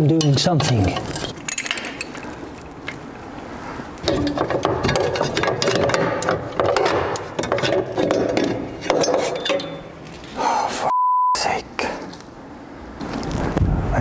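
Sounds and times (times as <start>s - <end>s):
handling noise: 0.3s - 10.4s.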